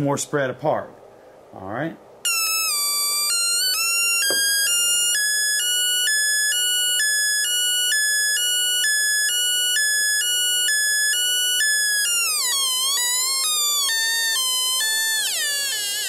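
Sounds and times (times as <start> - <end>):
buzzy warbling siren tone: 2.3 - 16.0.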